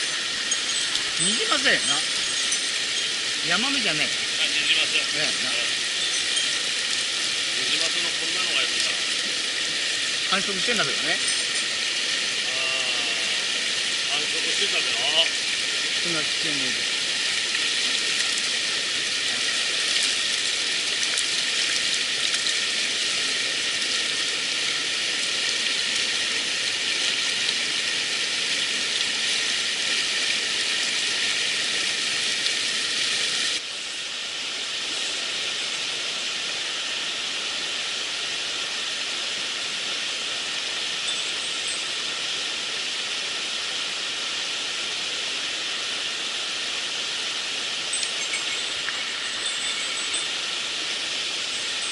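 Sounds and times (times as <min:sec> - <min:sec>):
mountain stream rushing: 0:00.0 - 0:51.9.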